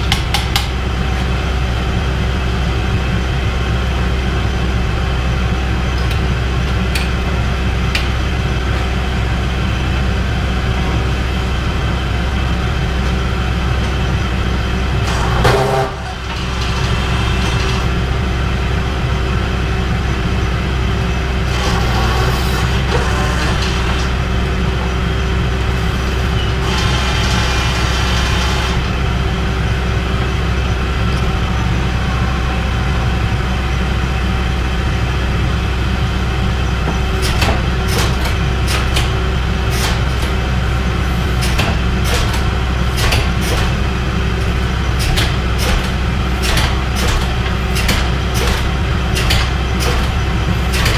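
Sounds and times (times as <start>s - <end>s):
hydraulic power unit humming: 0.0s - 50.9s
metallic clicks and clanks: 37.2s - 40.4s, 41.4s - 50.9s.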